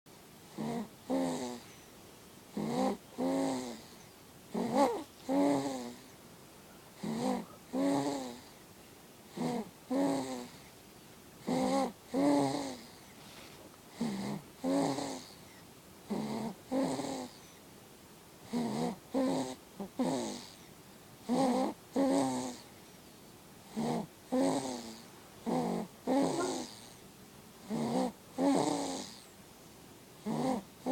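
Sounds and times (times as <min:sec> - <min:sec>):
baby snoring: 0:00.5 - 0:01.9, 0:02.5 - 0:06.2, 0:07.0 - 0:08.6, 0:09.3 - 0:10.7, 0:11.4 - 0:13.2, 0:13.9 - 0:17.6, 0:18.4 - 0:22.7, 0:23.6 - 0:27.0, 0:27.6 - 0:29.3, 0:30.2 - 0:30.9.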